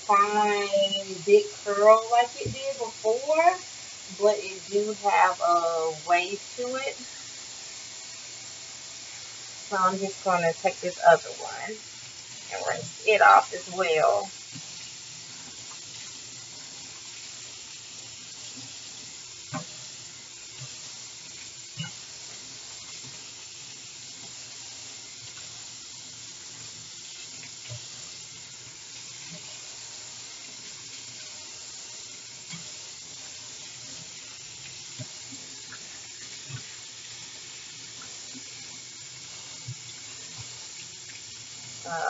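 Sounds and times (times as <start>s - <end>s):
tap water running into sink: 14.0s - 42.0s.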